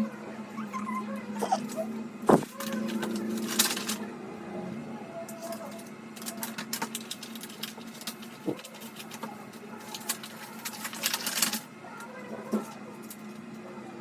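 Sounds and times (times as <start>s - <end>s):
paper and plastic crackling: 2.3s - 4.0s, 5.3s - 13.6s.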